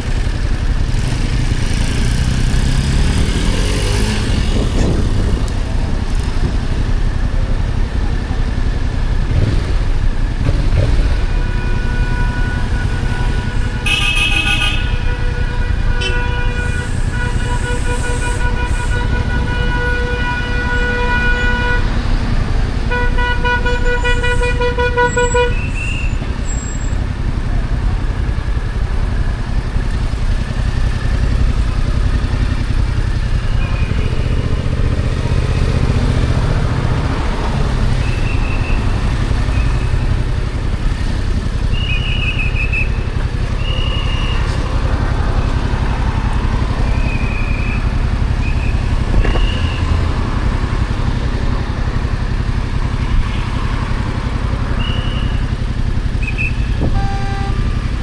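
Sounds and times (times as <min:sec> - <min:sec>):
motorcycle engine rumbling: 0:00.0 - 0:58.0
vehicle horn honking: 0:11.1 - 0:22.1, 0:22.8 - 0:27.0, 0:54.8 - 0:58.0.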